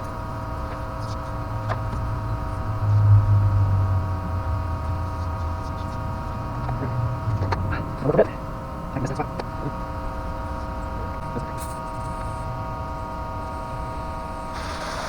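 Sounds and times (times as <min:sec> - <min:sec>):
steady machine hum: 0:00.0 - 0:15.0
low rumble: 0:01.4 - 0:09.0.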